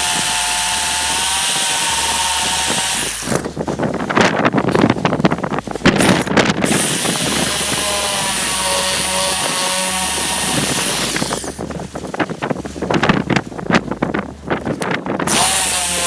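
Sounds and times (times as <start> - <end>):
hammer drill into concrete: 0.0 - 3.5, 6.0 - 11.6, 15.3 - 16.0
wind buffeting microphone: 0.0 - 16.0.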